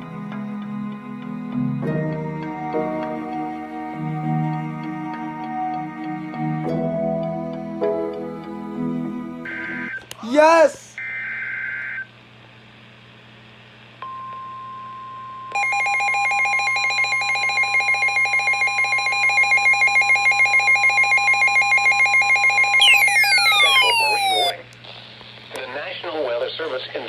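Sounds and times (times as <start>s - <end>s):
pulsing alarm tone: 17.4s - 24.6s
falling whistling sweeps: 22.8s - 24.5s
screeching digital data burst: 22.8s - 24.6s
steady alert tone: 22.8s - 24.6s.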